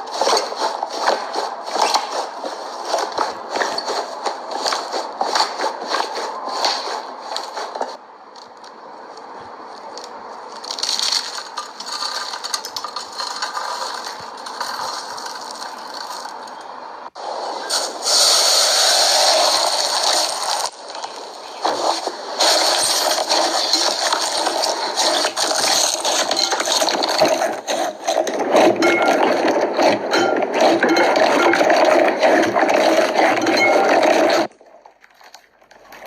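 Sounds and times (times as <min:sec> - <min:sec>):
slime squishing and crackling: 0:09.8 - 0:16.8, 0:17.8 - 0:36.0.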